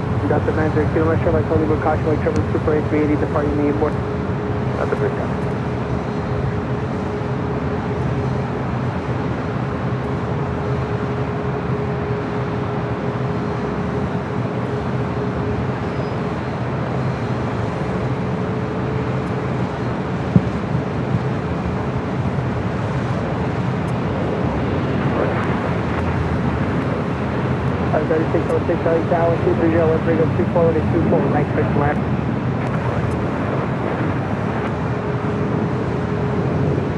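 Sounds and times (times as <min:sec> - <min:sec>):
jet engines rumbling: 0:00.0 - 0:36.9.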